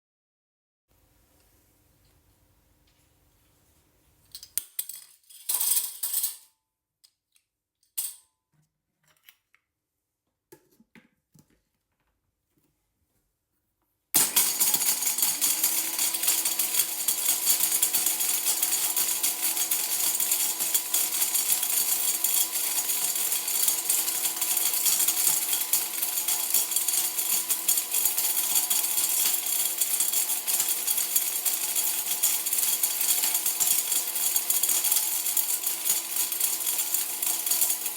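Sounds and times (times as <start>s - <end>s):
blender running: 14.2s - 37.9s
hard pieces rattling in blender jar: 14.2s - 37.9s.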